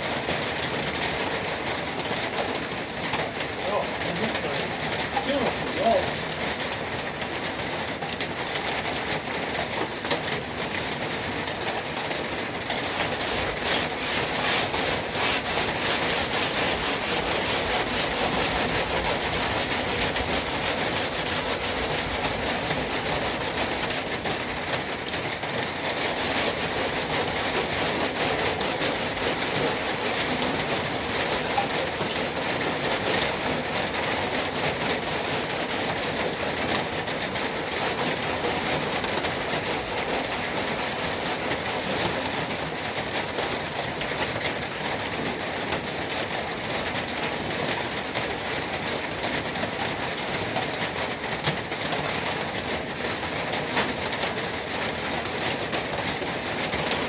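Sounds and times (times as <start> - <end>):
sandpaper sanding metal: 12.7 - 24.8, 25.6 - 42.5.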